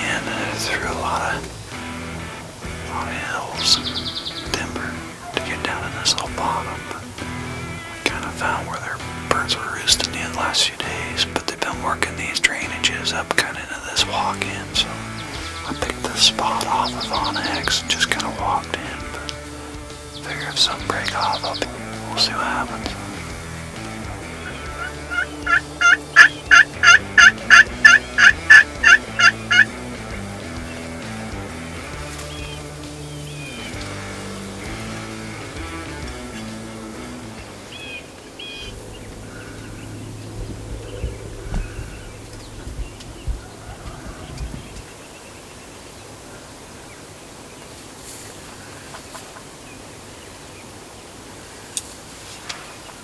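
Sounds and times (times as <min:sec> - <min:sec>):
turkeys clucking: 0:00.0 - 0:47.7, 0:48.4 - 0:50.6
outdoor background hiss: 0:00.0 - 0:53.0
turkey yelping: 0:21.2 - 0:29.8.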